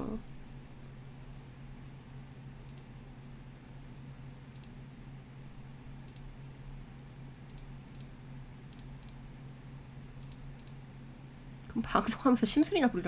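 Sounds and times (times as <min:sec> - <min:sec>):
steady low hum: 0:00.0 - 0:13.0
computer mouse clicks: 0:02.6 - 0:02.9, 0:04.5 - 0:04.8, 0:06.0 - 0:06.3, 0:07.4 - 0:09.2, 0:10.2 - 0:10.8.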